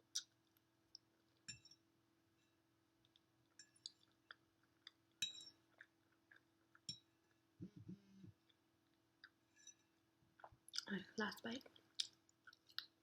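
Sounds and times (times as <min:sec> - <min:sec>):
mouth clicks and chewing: 0:00.1 - 0:00.4, 0:05.7 - 0:06.9, 0:10.4 - 0:11.0, 0:11.6 - 0:13.0
low throat hum: 0:07.6 - 0:08.3.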